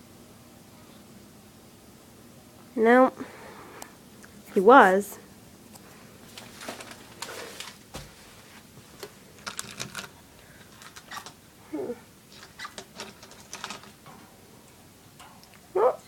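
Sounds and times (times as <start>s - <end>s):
parrot claws and beak tapping bars: 9.0s - 11.4s, 12.3s - 14.3s.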